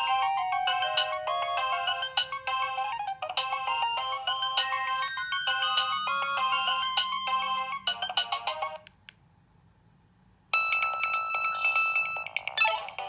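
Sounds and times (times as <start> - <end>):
phone ringtone melody: 0.0 - 8.8, 10.6 - 13.0
ringtone tune of held notes: 0.0 - 8.8, 10.6 - 13.0.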